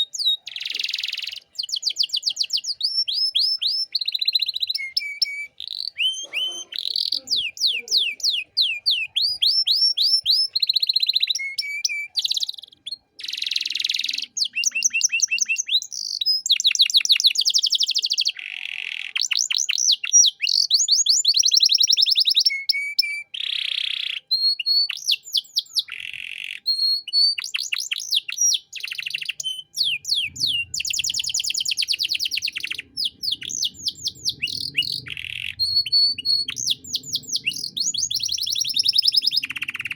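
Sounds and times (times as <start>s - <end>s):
canary singing trills: 0.0s - 39.9s.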